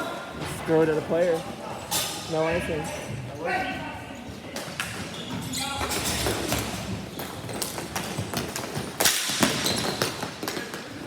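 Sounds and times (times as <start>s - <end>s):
hockey sticks and ball clattering: 4.6s - 11.0s.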